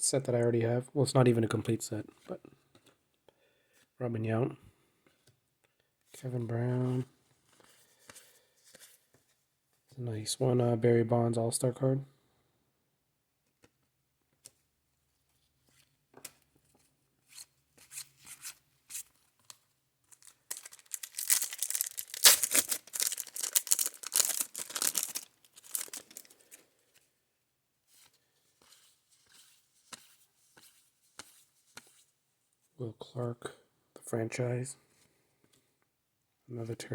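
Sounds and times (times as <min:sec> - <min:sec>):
foil wrapper tearing and crinkling: 0:20.1 - 0:26.5.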